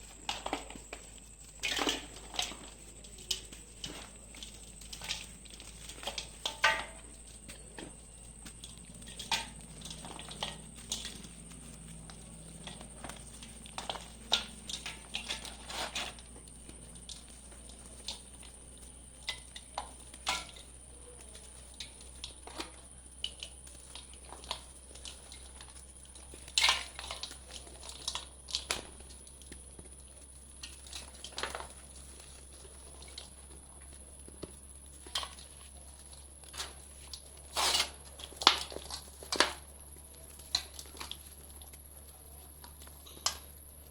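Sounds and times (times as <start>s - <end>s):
dried mud crumbling: 0.0s - 43.9s.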